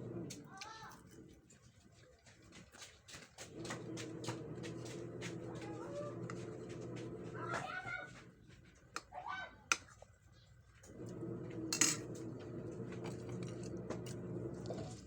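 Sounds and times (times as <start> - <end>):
utensils clinking on a plate: 11.7 - 12.2.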